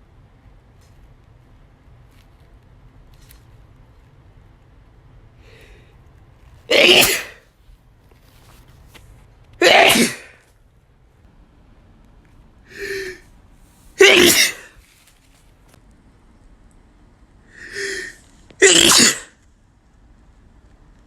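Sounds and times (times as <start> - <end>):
man sneezing: 6.7 - 7.4, 9.6 - 10.4, 14.0 - 14.7, 17.6 - 19.3.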